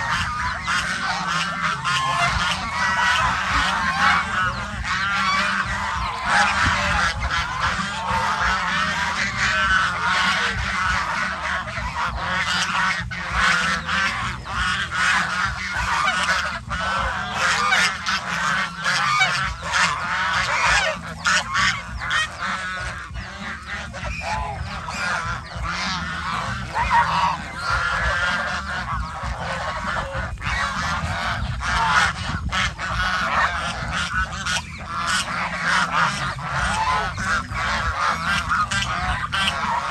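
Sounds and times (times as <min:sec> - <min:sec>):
geese honking: 0:00.0 - 0:39.9.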